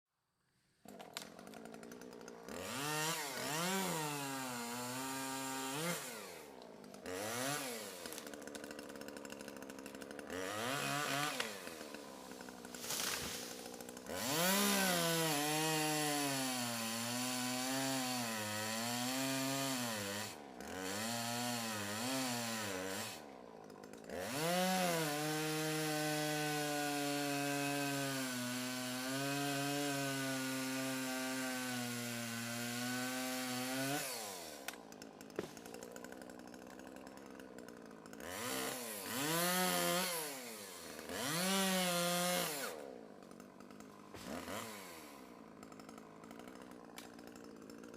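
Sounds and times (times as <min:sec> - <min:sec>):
chainsaw cutting logs: 0:00.6 - 0:47.9.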